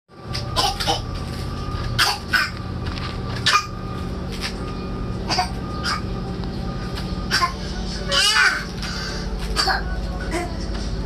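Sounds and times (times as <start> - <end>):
baby coughing: 0.6 - 1.1, 2.0 - 2.5, 5.3 - 6.0, 7.3 - 7.6, 9.6 - 10.5.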